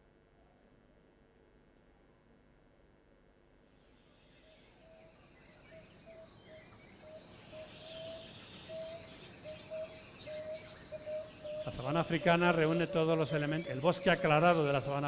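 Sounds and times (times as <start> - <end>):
insect calls: 3.9 - 15.0
higher bird chirps: 4.4 - 15.0
low piping bird notes: 4.5 - 15.0.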